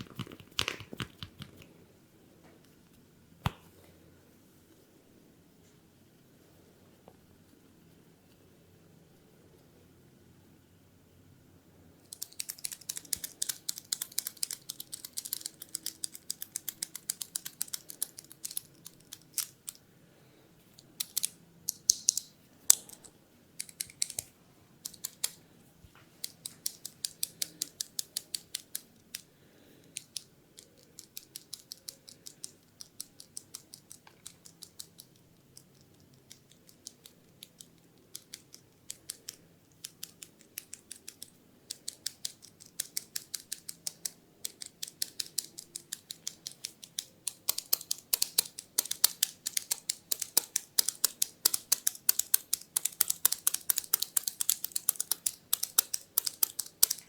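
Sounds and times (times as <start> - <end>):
sharp crisp clicks: 20.8 - 25.4, 26.2 - 57.0.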